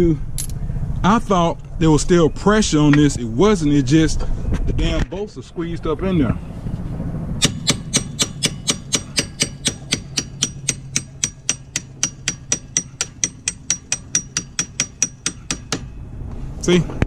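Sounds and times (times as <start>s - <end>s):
hammer striking steel bolts: 7.4s - 16.0s.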